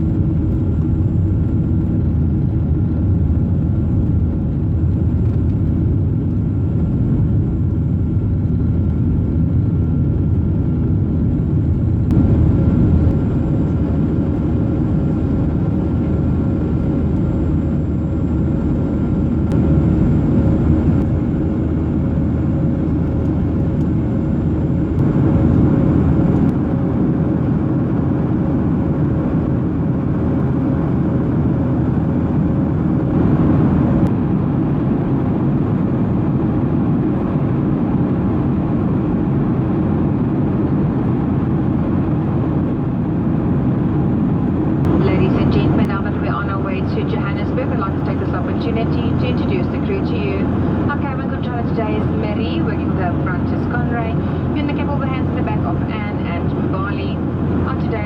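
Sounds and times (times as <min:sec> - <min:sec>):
airliner cabin engine rumble: 0:00.0 - 0:58.0.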